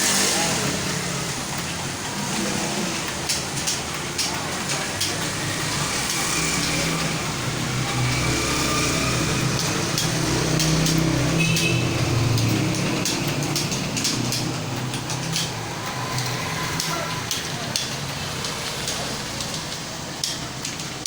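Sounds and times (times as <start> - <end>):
low engine rumble: 0.4 - 21.0
keyboard keys clicking: 1.5 - 21.0.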